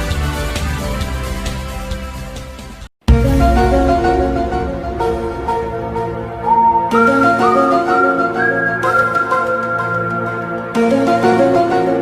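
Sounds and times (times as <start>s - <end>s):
sustained chord: 3.1s - 8.6s
flute-like sliding melody: 3.4s - 11.7s.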